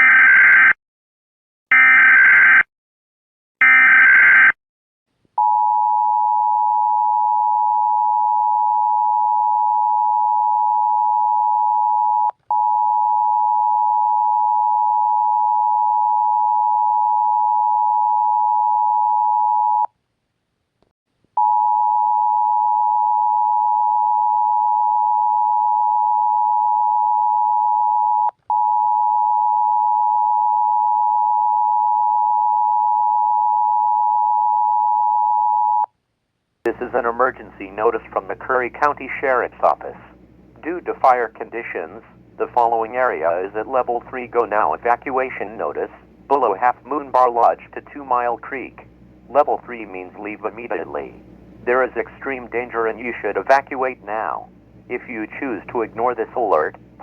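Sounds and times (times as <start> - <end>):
steady attention tone: 36.7 - 57.0.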